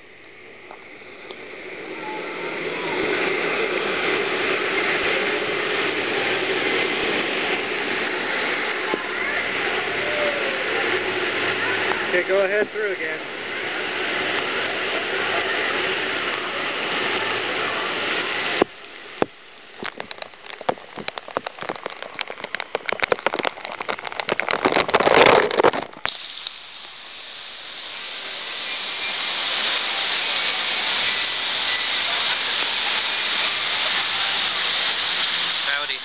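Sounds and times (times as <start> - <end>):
loud water splash: 0.0 - 36.0
pool waterfall rushing: 0.0 - 36.0
water pattering on microphone: 0.0 - 36.0.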